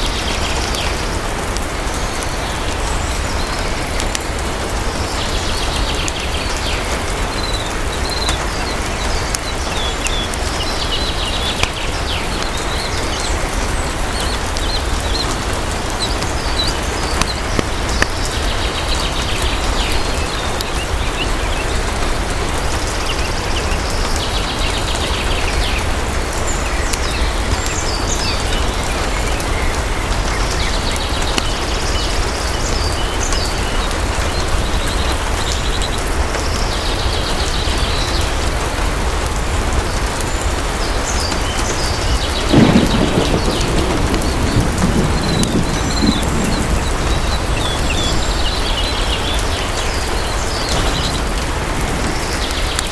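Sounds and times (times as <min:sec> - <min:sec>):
heavy rain falling: 0:00.0 - 0:36.4, 0:38.8 - 0:52.9
thunder rumbling: 0:42.4 - 0:49.6.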